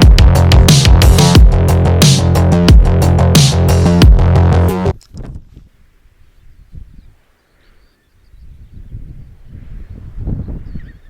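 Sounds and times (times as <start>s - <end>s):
electronic music with heavy beat: 0.0s - 5.0s.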